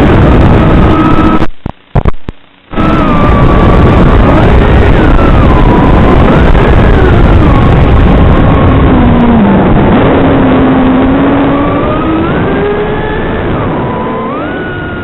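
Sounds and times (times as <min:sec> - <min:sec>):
drone motors whining: 0:00.0 - 0:01.5, 0:02.7 - 0:15.0.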